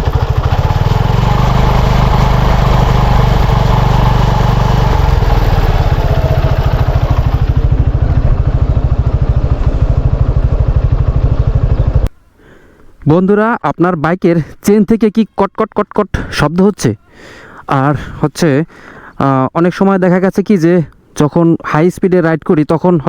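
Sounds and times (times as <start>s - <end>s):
motorcycle engine idling: 0.0s - 12.1s.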